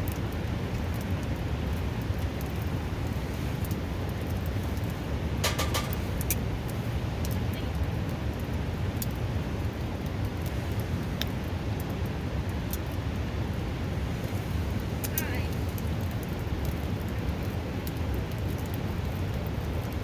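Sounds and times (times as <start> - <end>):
wood fire popping and crackling: 0.0 - 20.0.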